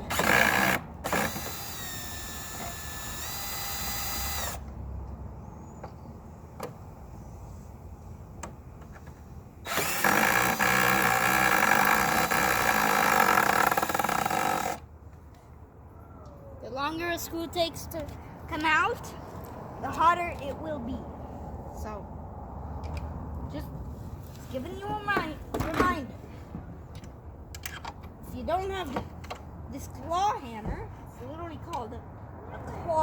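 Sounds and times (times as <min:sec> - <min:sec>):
power drill running: 0:00.1 - 0:04.6, 0:09.7 - 0:14.8.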